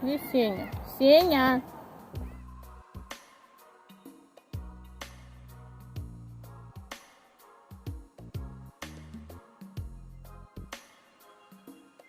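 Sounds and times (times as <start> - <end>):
bass line: 2.2 - 2.9, 4.6 - 6.8, 8.2 - 10.6.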